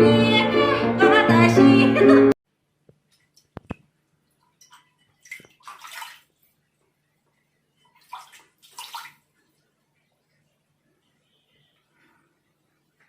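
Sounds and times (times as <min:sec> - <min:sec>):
faint water splashing: 0:03.0 - 0:13.0.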